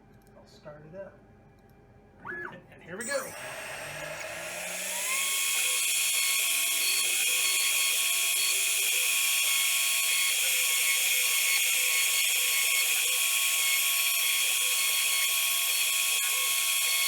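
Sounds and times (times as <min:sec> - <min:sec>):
fainter lower tone: 0:02.3 - 0:03.4
router spindle whine: 0:03.0 - 0:17.0.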